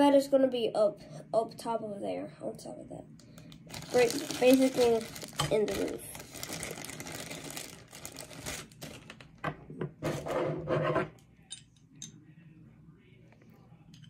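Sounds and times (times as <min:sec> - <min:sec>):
packaging rubbing and scraping: 0:03.7 - 0:09.2.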